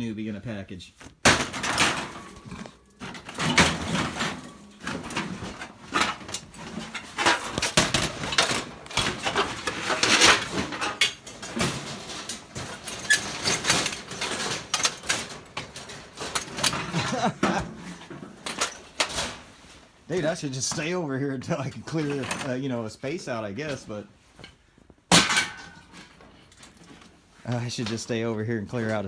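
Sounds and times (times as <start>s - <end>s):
junk clattering in a dumpster: 1.0s - 21.0s, 25.1s - 27.1s.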